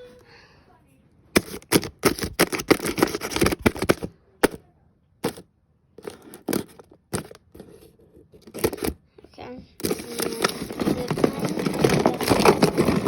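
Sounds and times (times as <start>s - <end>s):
paper tearing and crumpling: 1.4s - 4.1s, 9.8s - 13.0s.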